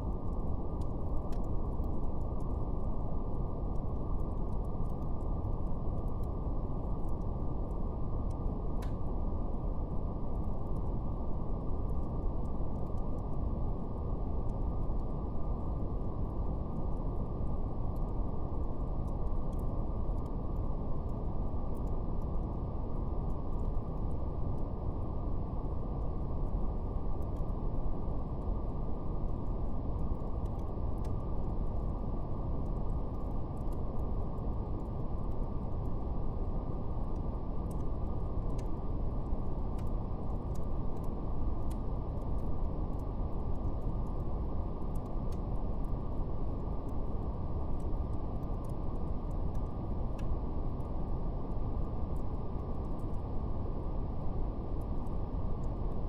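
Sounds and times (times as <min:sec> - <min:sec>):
fire crackling: 0:25.7 - 0:50.9.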